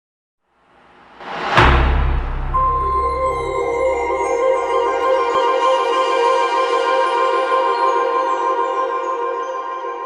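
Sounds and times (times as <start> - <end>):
deep booming drum hit: 0.9 - 5.4
musical swell: 1.3 - 7.4.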